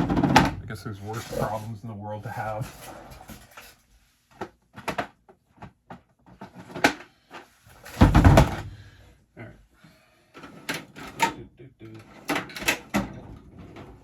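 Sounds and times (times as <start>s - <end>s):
heavy thump: 8.0s - 8.8s.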